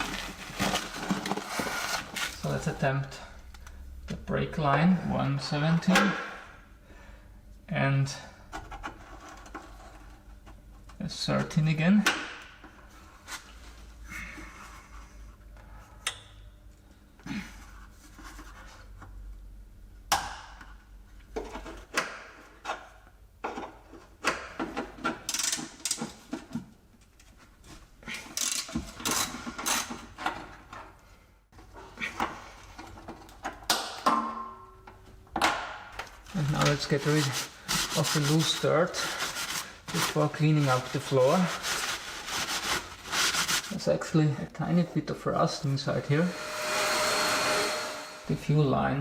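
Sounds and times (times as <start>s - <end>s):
scraping and rubbing: 0.0s - 2.7s, 36.3s - 43.9s, 46.1s - 48.4s.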